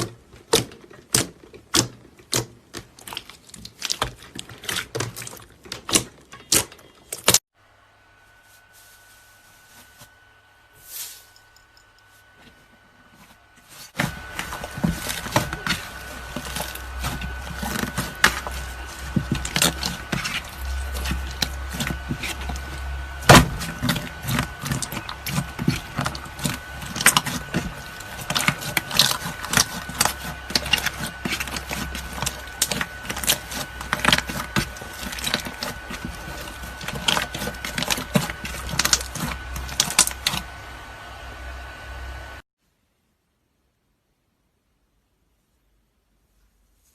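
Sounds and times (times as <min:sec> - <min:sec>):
steady low hum: 0:06.1 - 0:42.4.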